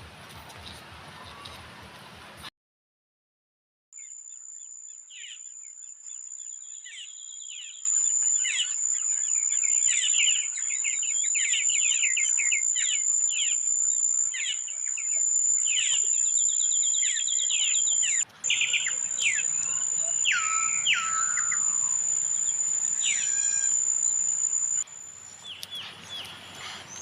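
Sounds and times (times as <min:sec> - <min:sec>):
birds chirping: 0:05.1 - 0:27.0
pulsed insect trilling: 0:07.9 - 0:24.8
high-pitched insect drone: 0:07.9 - 0:24.9.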